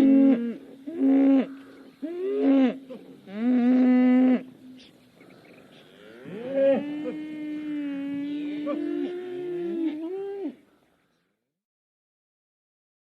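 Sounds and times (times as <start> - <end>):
cow mooing: 0.0 - 4.9, 5.7 - 10.6.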